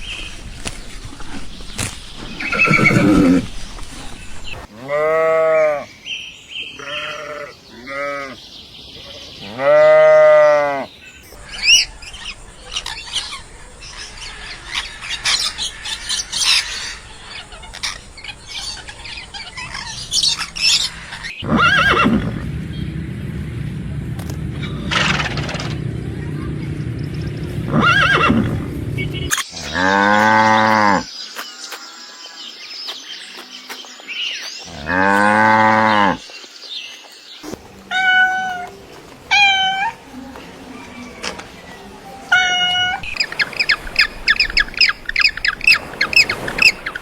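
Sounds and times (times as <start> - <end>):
farm animal calls: 6.7 - 22.5, 27.6 - 31.1, 37.4 - 46.8.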